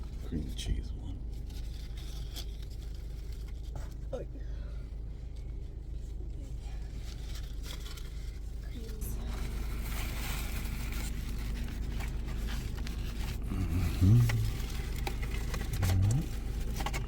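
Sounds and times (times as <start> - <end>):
light rustling: 1.3 - 17.0
car cabin hum: 8.6 - 17.0.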